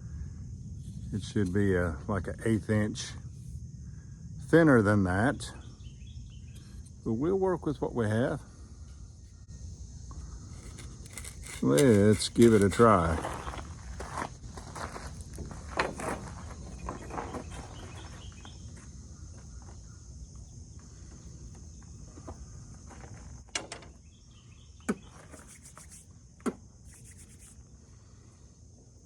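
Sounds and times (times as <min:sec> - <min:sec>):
insects chirping drone: 0:00.0 - 0:29.0.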